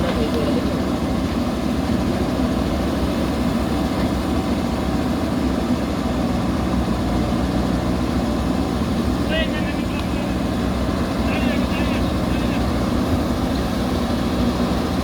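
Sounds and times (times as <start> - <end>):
diesel engine humming: 0.0 - 15.0.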